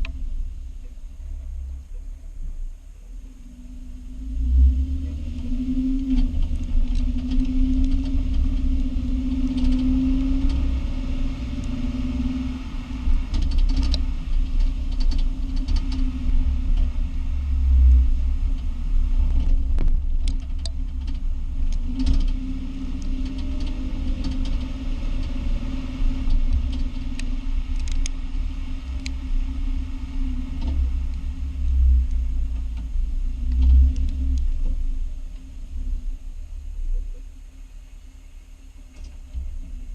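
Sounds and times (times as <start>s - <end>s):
car road rumble: 0.0s - 39.9s
clicks and knocks from brake: 13.3s - 16.1s, 19.3s - 22.4s.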